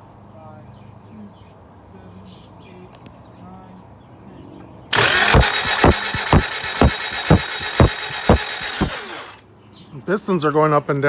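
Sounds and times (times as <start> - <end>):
car engine cranking on starter: 4.9 - 9.4.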